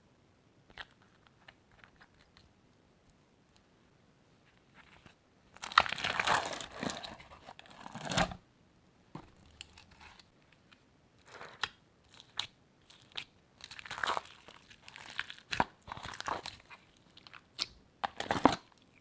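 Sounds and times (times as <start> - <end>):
crinkling and tearing: 4.8 - 8.4, 9.4 - 18.8.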